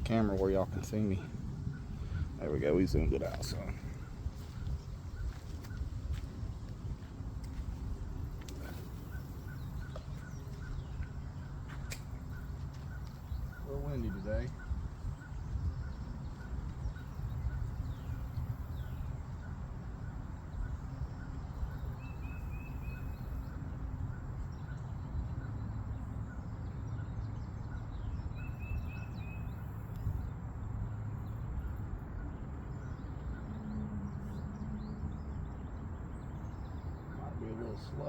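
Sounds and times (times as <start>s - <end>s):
wind buffeting microphone: 0.0s - 25.4s
birds chirping: 0.0s - 38.0s.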